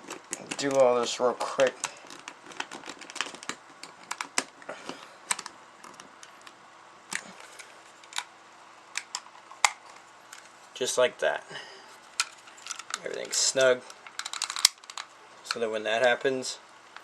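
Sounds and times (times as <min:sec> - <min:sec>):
plastic parts clicking: 0:00.0 - 0:08.3, 0:08.9 - 0:10.5, 0:12.2 - 0:15.6.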